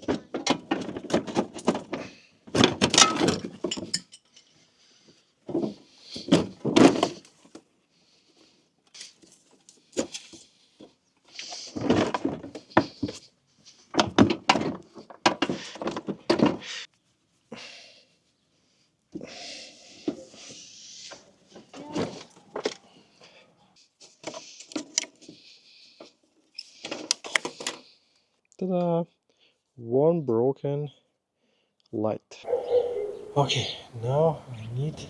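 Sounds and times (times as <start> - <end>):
car body parts clattering: 0.0 - 4.3, 5.5 - 7.5, 14.0 - 16.7.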